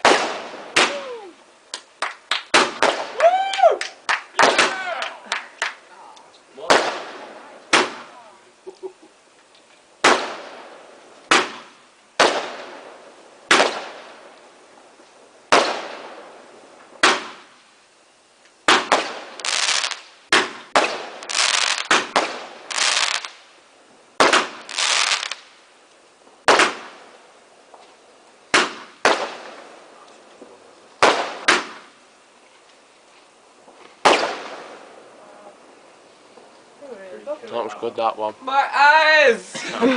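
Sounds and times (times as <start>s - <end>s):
fireworks bangs echoing: 0.0s - 1.3s, 2.0s - 5.8s, 6.6s - 8.3s, 10.0s - 17.6s, 18.6s - 23.5s, 24.2s - 27.8s, 28.5s - 32.1s, 33.6s - 36.5s
fireworks hissing bursts: 0.0s - 39.9s.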